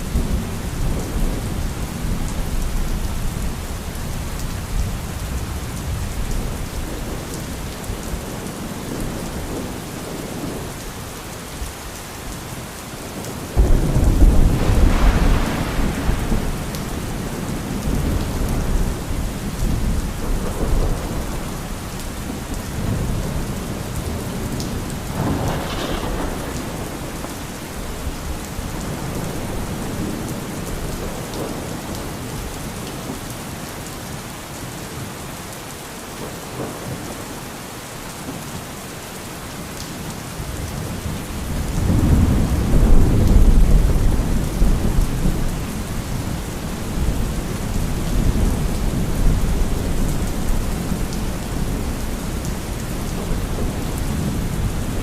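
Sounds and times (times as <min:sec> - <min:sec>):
steady rain: 0:00.0 - 0:55.0
rolling thunder: 0:13.6 - 0:31.8, 0:40.6 - 0:55.0.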